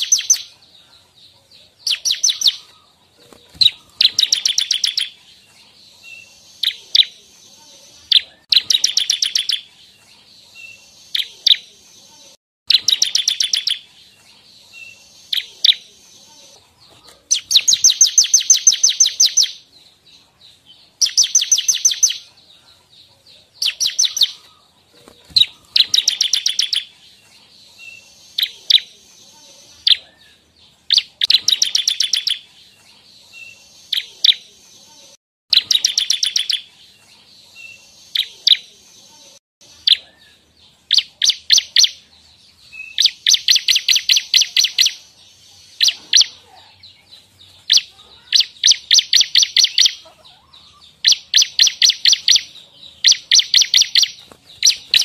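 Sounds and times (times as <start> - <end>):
bird chattering trills: 1.8 - 5.2, 17.3 - 19.6, 25.2 - 26.9, 43.0 - 46.6, 47.7 - 55.0.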